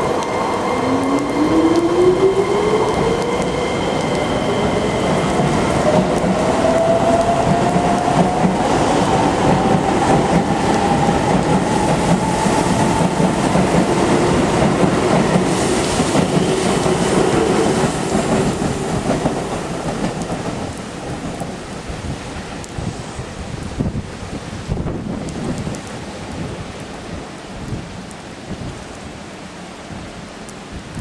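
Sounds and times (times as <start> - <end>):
wheels rattling on rails: 0.0 - 22.9
heavy rain: 0.0 - 31.0.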